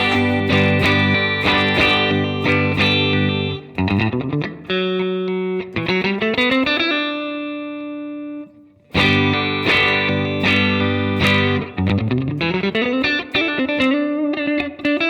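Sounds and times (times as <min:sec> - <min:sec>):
electric guitar through amplifier: 0:00.0 - 0:06.4.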